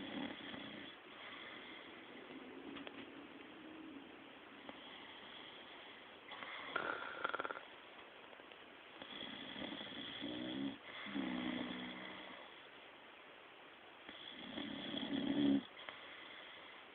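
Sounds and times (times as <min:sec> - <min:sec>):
person snoring: 0:06.3 - 0:07.7.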